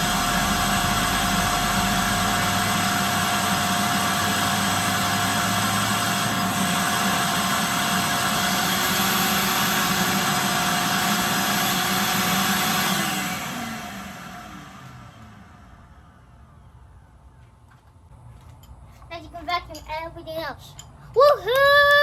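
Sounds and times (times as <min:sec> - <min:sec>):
vacuum cleaner running: 0:00.0 - 0:17.2.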